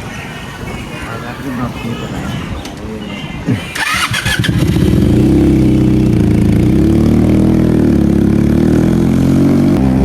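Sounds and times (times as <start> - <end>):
motorcycle engine idling loudly: 3.8 - 10.0.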